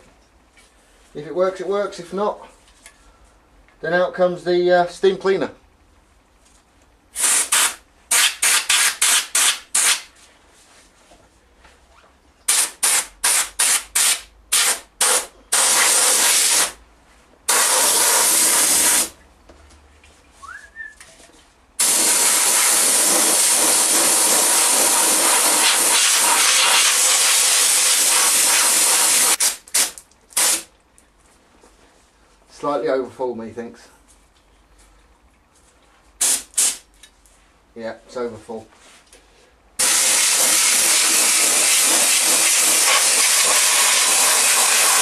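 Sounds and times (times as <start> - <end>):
spray gun hissing: 17.5 - 19.1, 21.8 - 29.5, 39.8 - 45.0.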